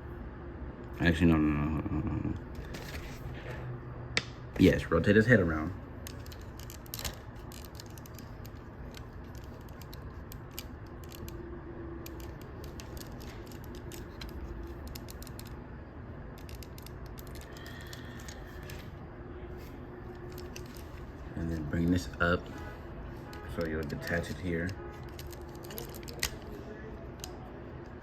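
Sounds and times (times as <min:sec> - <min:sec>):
plastic parts clicking: 0:06.0 - 0:11.4, 0:12.0 - 0:15.6, 0:16.3 - 0:18.8, 0:20.1 - 0:21.0, 0:23.3 - 0:26.6, 0:27.2 - 0:27.4.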